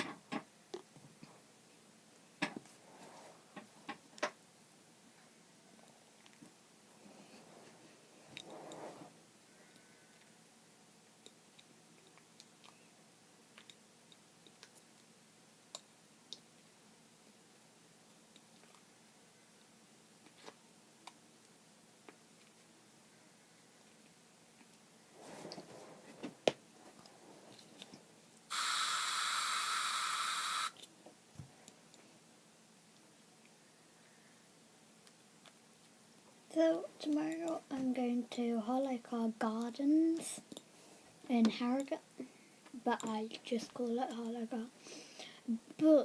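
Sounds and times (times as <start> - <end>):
aerosol can spraying: 28.5 - 30.8.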